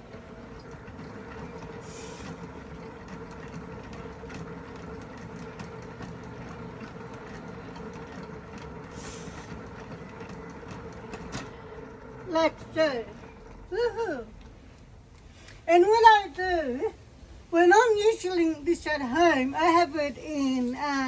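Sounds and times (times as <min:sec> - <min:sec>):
hand-cranked washing machine whirring: 0:00.0 - 0:16.1.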